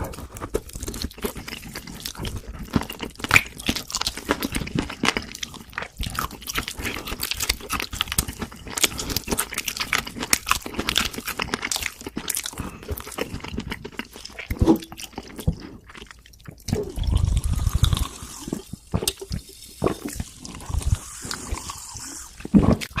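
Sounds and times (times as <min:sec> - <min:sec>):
chewing and crunching food: 0:00.0 - 0:23.0
wet mouth clicks: 0:16.4 - 0:23.0.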